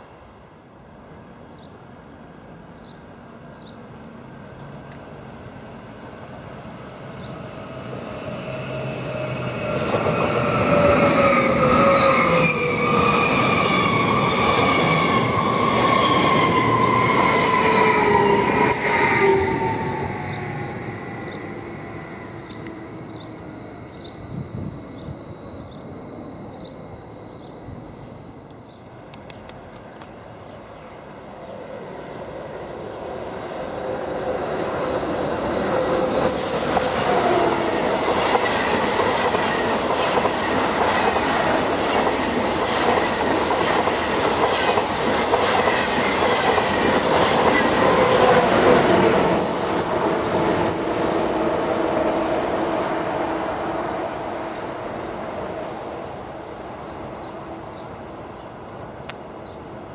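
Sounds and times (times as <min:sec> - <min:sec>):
steady ringing tones: 0:21.8 - 0:29.1
train wheels rumbling: 0:31.8 - 0:54.8.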